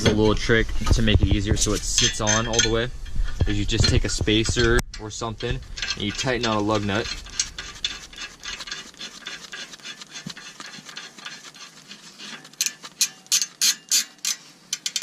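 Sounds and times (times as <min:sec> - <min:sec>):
metallic scraping and ticking: 0:00.0 - 0:15.0
ratchet wrench clicking: 0:12.6 - 0:15.0.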